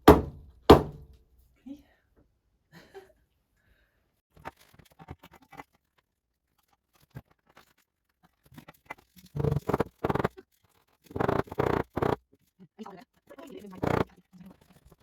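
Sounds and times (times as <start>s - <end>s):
rough rasping strokes: 9.3s - 10.4s, 11.0s - 12.2s, 13.8s - 14.7s.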